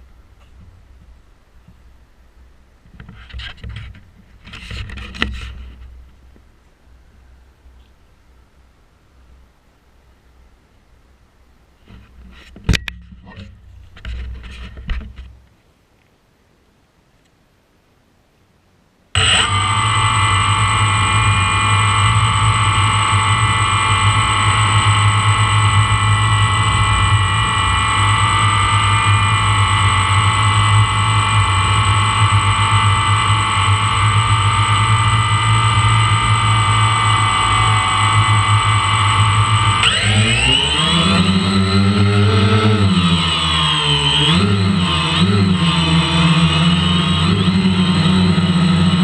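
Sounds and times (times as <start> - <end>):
low hum: 19.1 - 49.0
drone propellers whining: 19.2 - 49.0.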